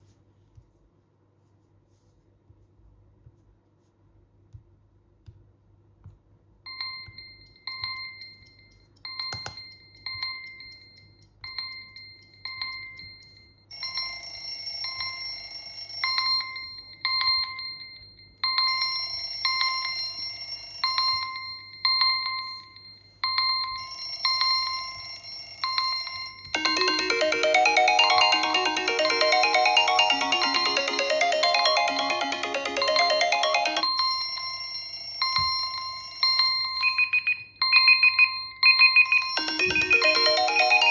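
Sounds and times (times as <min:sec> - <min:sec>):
melodic ringtone: 0:25.7 - 0:40.9.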